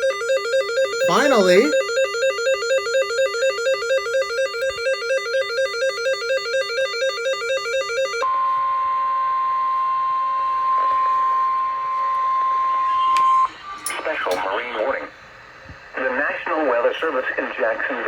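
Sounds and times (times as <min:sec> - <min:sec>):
buzzy warbling data tones: 0:00.0 - 0:08.2
steady high warning beep: 0:00.0 - 0:13.6.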